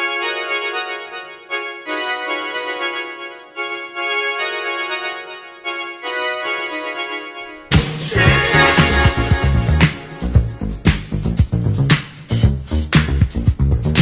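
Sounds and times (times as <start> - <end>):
organ-like keyboard chords: 0.0 - 11.2.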